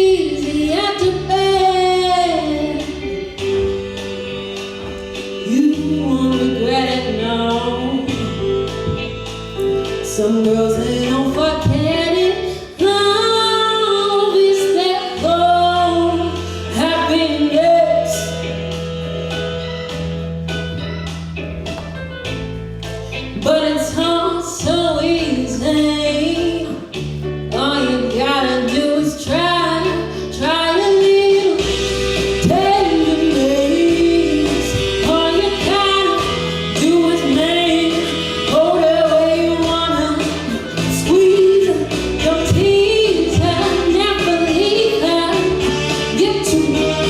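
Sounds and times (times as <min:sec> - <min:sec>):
woman singing: 0:00.0 - 0:03.4, 0:05.4 - 0:09.1, 0:09.8 - 0:18.4, 0:23.4 - 0:47.0
low bass notes: 0:00.0 - 0:14.1
live band music: 0:00.0 - 0:47.0.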